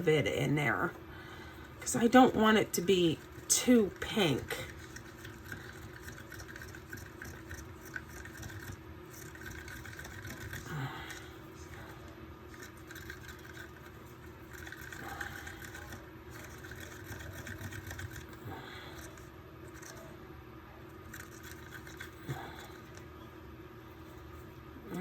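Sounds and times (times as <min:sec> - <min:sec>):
stir stick scraping in cup: 0:01.8 - 0:10.7, 0:12.5 - 0:20.1.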